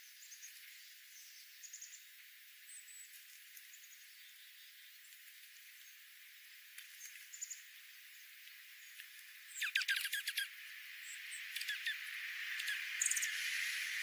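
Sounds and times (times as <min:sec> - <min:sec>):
small bird chirping: 0:06.8 - 0:14.0.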